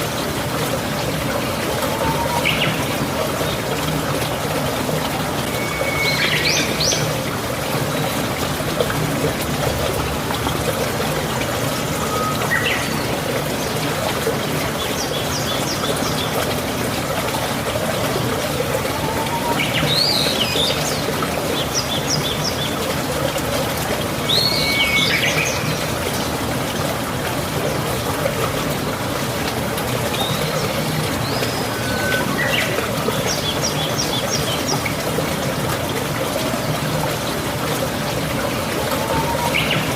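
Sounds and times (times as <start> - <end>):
water trickling: 0.0 - 39.9
birds chirping: 30.1 - 35.0, 38.6 - 39.9.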